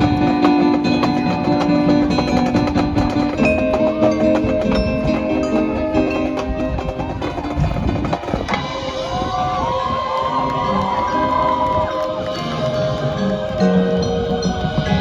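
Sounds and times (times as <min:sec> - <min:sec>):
marching band playing: 0:00.0 - 0:15.0
bell-like mallet percussion: 0:01.0 - 0:09.1.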